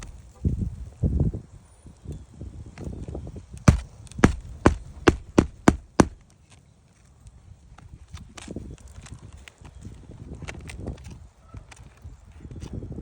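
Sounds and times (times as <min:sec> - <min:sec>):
hammer driving nails into shingles: 0:03.7 - 0:06.2.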